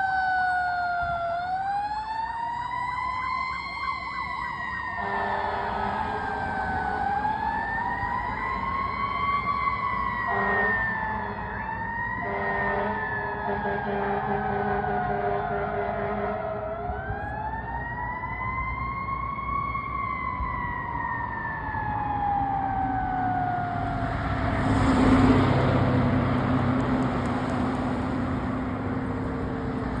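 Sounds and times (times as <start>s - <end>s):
siren wailing: 0.0s - 25.0s
heavy vehicle passing: 5.0s - 11.5s, 22.6s - 30.0s.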